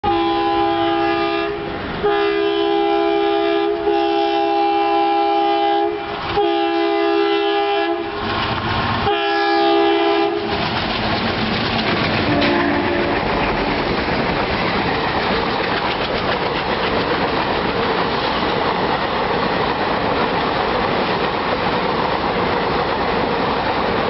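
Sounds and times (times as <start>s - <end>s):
locomotive horn blasts: 0.0s - 8.2s, 9.0s - 10.5s, 12.2s - 13.4s
train rushing past: 0.0s - 24.0s
wheels clattering over rail joints: 8.2s - 9.0s, 10.4s - 24.0s.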